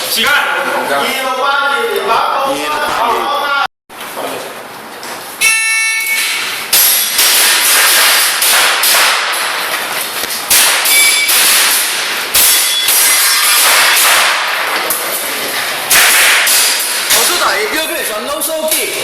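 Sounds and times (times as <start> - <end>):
rapid airsoft pistol shots: 6.8 - 9.7, 10.5 - 14.8, 15.9 - 17.4.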